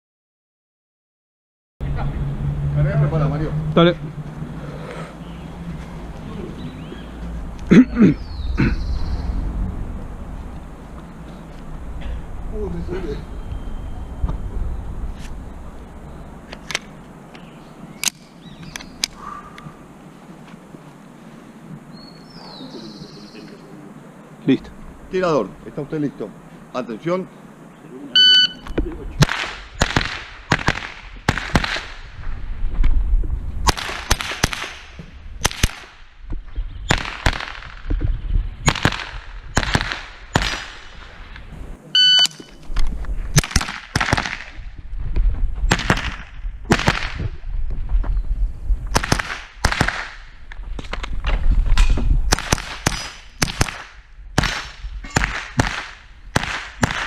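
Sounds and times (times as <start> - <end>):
shot timer beep: 28.2 - 28.6, 42.0 - 42.5
rifle shots in quick groups: 29.2 - 32.0, 33.6 - 36.1, 36.9 - 37.9, 38.6 - 41.1, 43.3 - 44.6, 45.7 - 47.3, 48.9 - 50.3, 52.3 - 57.0.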